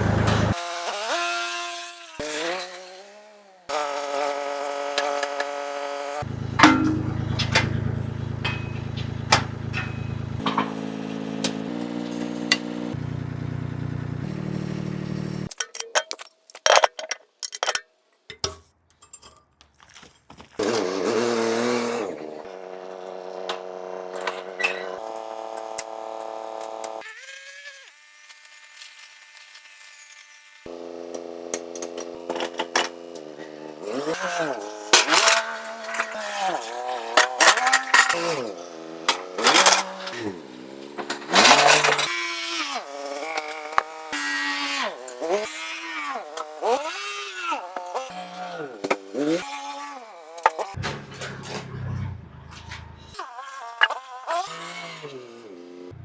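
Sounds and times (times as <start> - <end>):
tractor engine running: 0.0 - 0.6, 6.2 - 15.5
sharp knocks and clunks: 6.6 - 10.8.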